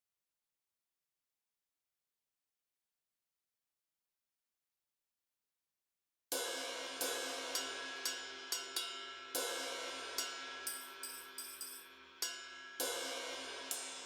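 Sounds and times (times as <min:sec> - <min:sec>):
electronic cymbal hits: 0:06.4 - 0:14.0.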